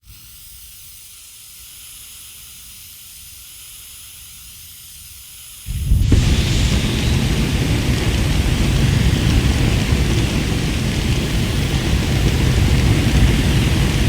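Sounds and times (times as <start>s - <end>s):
flamethrower hissing: 0.0s - 14.0s
deep blast of fire: 5.7s - 14.0s.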